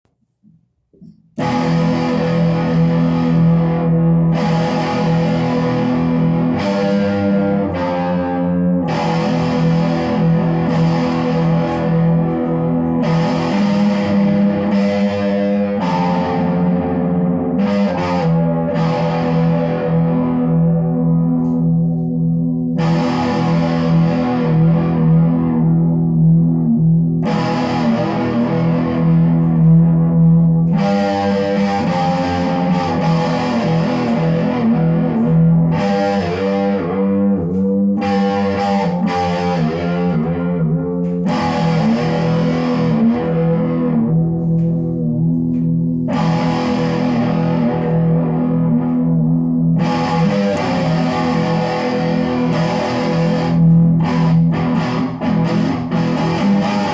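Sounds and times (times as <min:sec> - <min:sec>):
distorted electric guitar: 0:00.4 - 0:56.9.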